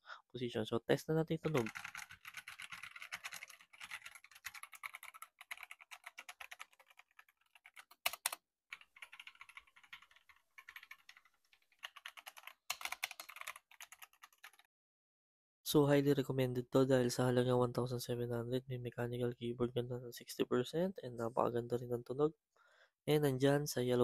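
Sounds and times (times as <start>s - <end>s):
mechanical keyboard typing: 1.4s - 14.7s.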